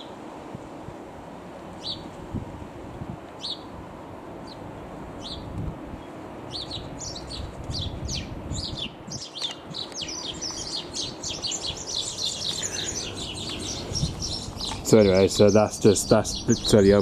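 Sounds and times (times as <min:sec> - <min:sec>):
low rumbling background noise: 0:00.0 - 0:17.0
small birds chirping: 0:01.8 - 0:02.2, 0:03.4 - 0:03.7, 0:04.4 - 0:17.0.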